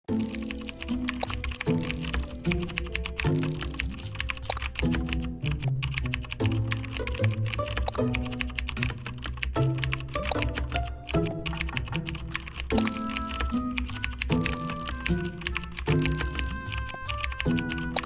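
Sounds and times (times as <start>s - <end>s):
background music: 0.1s - 18.0s
quick clicks: 0.2s - 18.0s.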